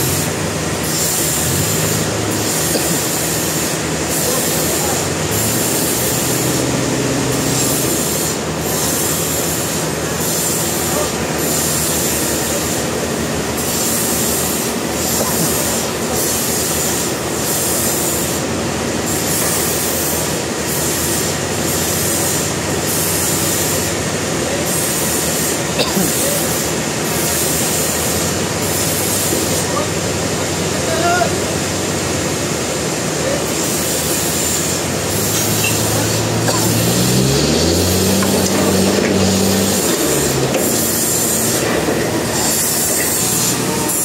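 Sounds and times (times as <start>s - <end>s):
sawmill blade cutting log: 0.0s - 18.5s, 33.5s - 44.0s.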